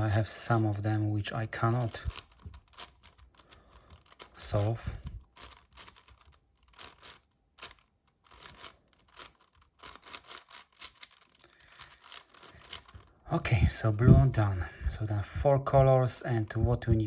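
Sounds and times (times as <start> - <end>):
puzzle cube plastic clicks: 1.6 - 13.2.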